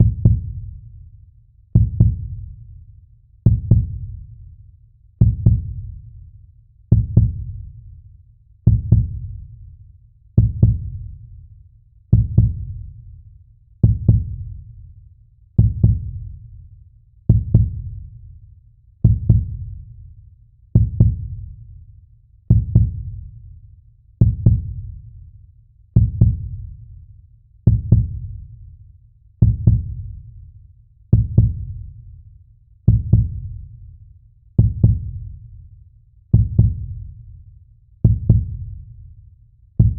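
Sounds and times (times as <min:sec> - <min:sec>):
slow heartbeat: 0:00.0 - 0:00.8, 0:01.8 - 0:02.6, 0:03.5 - 0:04.3, 0:05.2 - 0:06.0, 0:06.9 - 0:07.8, 0:08.7 - 0:09.6, 0:10.4 - 0:11.2, 0:12.1 - 0:13.0, 0:13.8 - 0:14.7, 0:15.6 - 0:16.5, 0:17.3 - 0:18.2, 0:19.0 - 0:20.0, 0:20.8 - 0:21.5, 0:22.5 - 0:23.4, 0:24.2 - 0:25.1, 0:26.0 - 0:26.9, 0:27.7 - 0:28.6, 0:29.4 - 0:30.3, 0:31.1 - 0:32.1, 0:32.9 - 0:33.8, 0:34.6 - 0:35.6, 0:36.3 - 0:37.2, 0:38.0 - 0:39.0.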